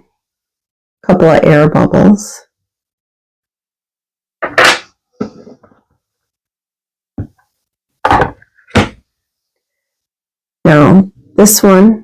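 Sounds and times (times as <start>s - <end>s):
resin pieces knocking on tabletop: 8.0s - 9.0s.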